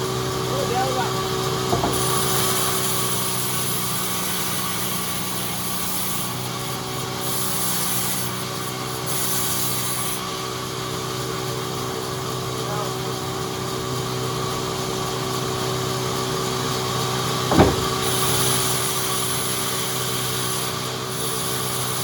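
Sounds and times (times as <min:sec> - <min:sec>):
sawmill saw humming: 0:00.3 - 0:05.8, 0:16.2 - 0:21.0
hiss of saw cutting wood: 0:01.7 - 0:10.3, 0:17.5 - 0:22.0.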